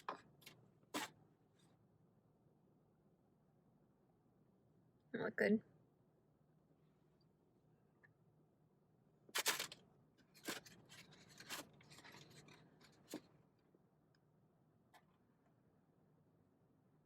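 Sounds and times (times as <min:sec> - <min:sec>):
food packaging rustling: 0:00.0 - 0:01.1, 0:09.4 - 0:13.3.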